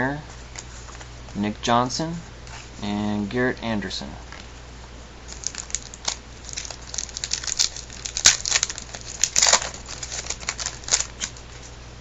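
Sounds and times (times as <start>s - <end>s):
wrapper tearing and crinkling: 5.3s - 11.6s.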